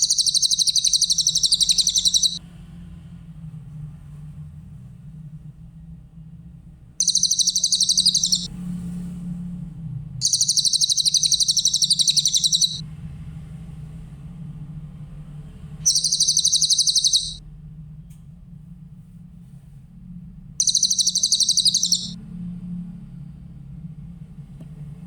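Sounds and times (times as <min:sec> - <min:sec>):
bird buzzing trill: 0:00.0 - 0:02.4, 0:07.0 - 0:08.5, 0:10.2 - 0:12.8, 0:15.9 - 0:17.4, 0:20.6 - 0:22.2
faint low hum: 0:00.0 - 0:02.4, 0:07.0 - 0:08.6, 0:10.2 - 0:12.8, 0:15.8 - 0:17.4, 0:20.6 - 0:22.2.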